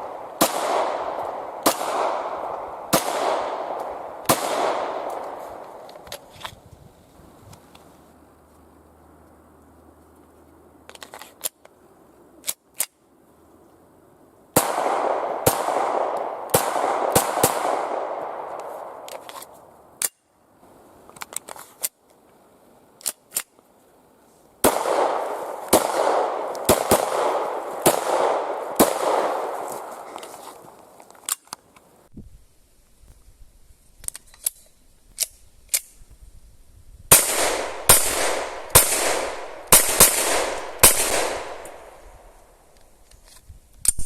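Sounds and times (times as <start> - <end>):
blank pistol shots echoing: 0.0 - 5.8, 14.6 - 19.1, 24.6 - 30.0, 37.1 - 42.4.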